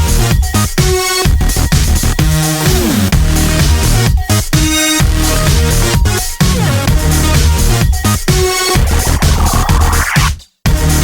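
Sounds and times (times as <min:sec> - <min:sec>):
electronic dance music: 0:00.0 - 0:11.0
rising sweep: 0:08.7 - 0:10.3.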